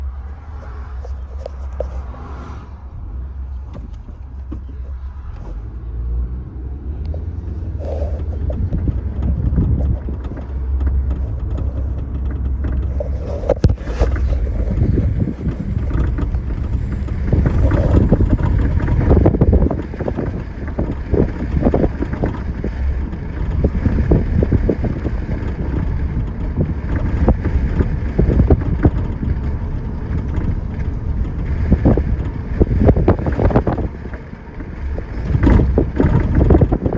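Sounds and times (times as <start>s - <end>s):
suspension clicking and knocking: 0.0s - 2.2s, 2.8s - 36.9s
car low rumble: 0.0s - 36.9s.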